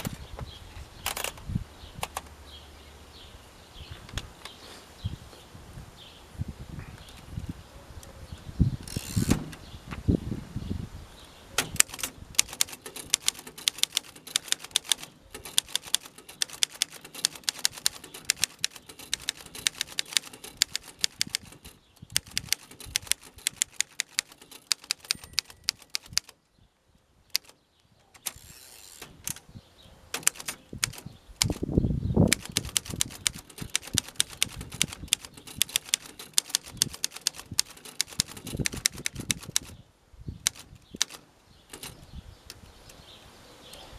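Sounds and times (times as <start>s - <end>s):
manual typewriter keys clacking: 11.6s - 26.4s, 27.3s - 29.4s, 30.1s - 31.7s, 32.3s - 39.8s, 40.4s - 42.0s.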